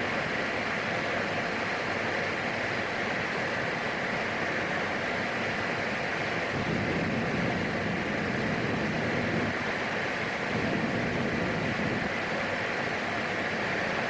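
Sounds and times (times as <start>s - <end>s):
aircraft cabin engine and airflow noise: 0.0s - 14.0s.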